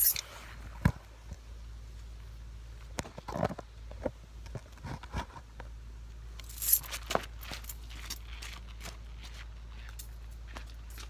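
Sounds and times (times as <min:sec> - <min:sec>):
clicks and clinks of handling: 0:00.0 - 0:00.3, 0:06.4 - 0:11.0
steady low hum: 0:00.0 - 0:11.0.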